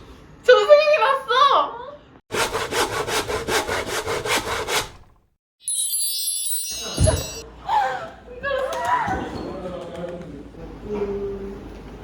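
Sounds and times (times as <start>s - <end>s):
rhythmic sawing: 2.3s - 5.1s
high shimmering chime: 5.6s - 7.4s.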